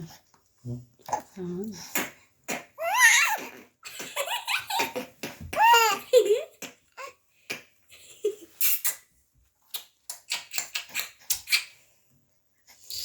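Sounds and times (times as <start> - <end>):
baby squeak: 2.8 - 3.6
baby laughing: 2.8 - 7.2.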